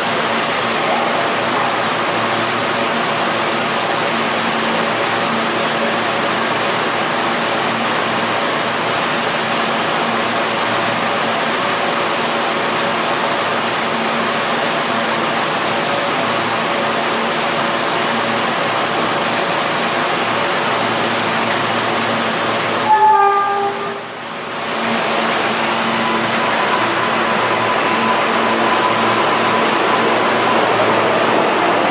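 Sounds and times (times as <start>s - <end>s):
subway train rush and hum: 0.0s - 31.9s
short pitched signal tone: 22.8s - 24.1s, 25.8s - 30.7s.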